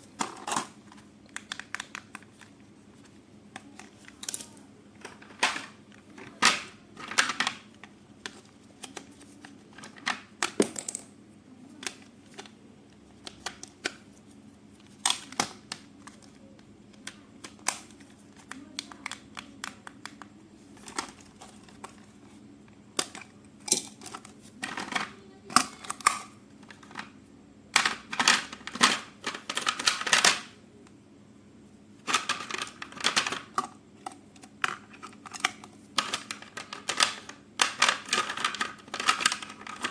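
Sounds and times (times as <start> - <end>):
toy packaging clicks and taps: 1.3 - 2.6, 13.2 - 14.0, 14.8 - 22.1, 23.0 - 27.1, 27.8 - 30.5, 32.0 - 39.9.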